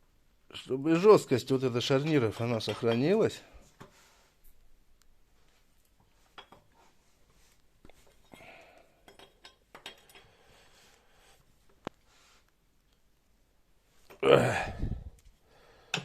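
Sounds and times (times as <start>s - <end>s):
small metal parts clinking: 9.0s - 10.3s.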